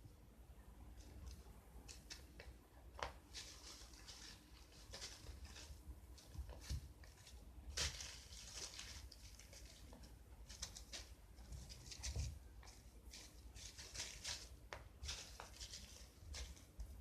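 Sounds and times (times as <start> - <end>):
faint rustling: 0.8 - 17.0
light scratchy taps: 1.0 - 3.5, 9.1 - 17.0.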